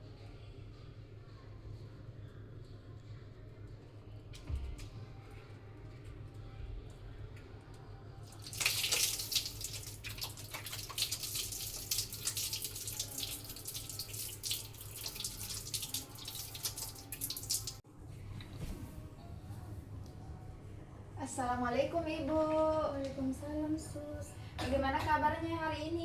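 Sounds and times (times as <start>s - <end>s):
hands washing under water: 8.3s - 17.8s
tap water running into sink: 8.3s - 17.8s.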